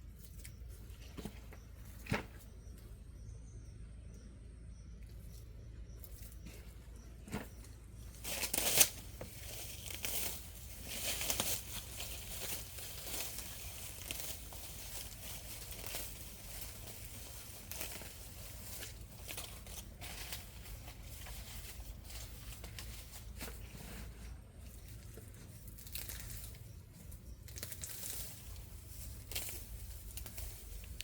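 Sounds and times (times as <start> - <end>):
rustling and crinkling: 0.0 - 2.9, 5.3 - 31.0
sharp crackle: 24.8 - 31.0.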